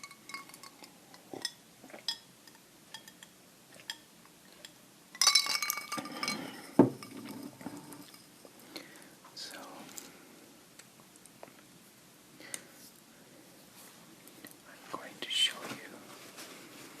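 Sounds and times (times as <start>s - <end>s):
utensil clinking against dish: 0.0s - 4.0s, 4.6s - 8.3s.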